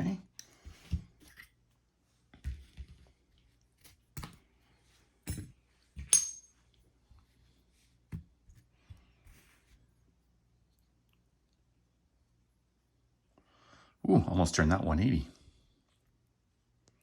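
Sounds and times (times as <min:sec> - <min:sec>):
sharp metallic clink: 0:06.1 - 0:06.6.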